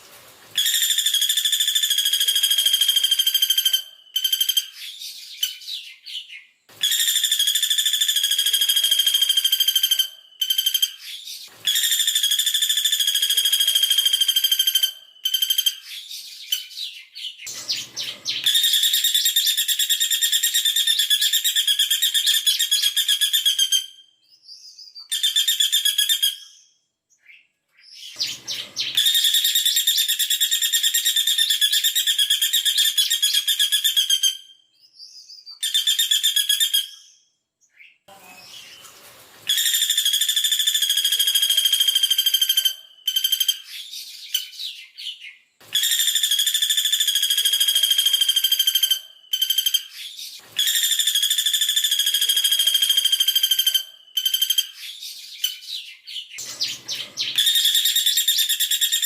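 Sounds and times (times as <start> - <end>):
woodpecker rattling trills: 56.4 - 59.0.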